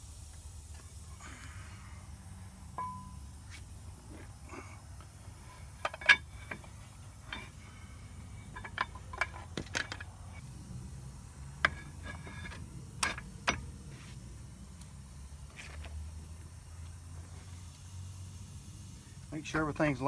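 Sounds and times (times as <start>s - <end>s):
metal clinks and knocks: 2.7s - 3.3s, 5.4s - 10.4s, 11.6s - 13.9s.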